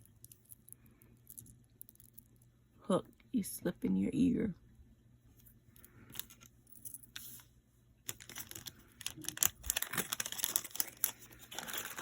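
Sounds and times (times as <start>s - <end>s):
plastic packaging crinkling: 8.1s - 12.0s.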